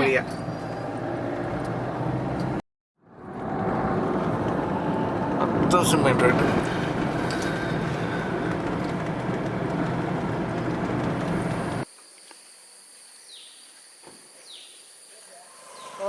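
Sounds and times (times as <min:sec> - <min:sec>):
vehicle road and engine rumble: 0:00.0 - 0:11.9
high-pitched insect drone: 0:11.8 - 0:16.0.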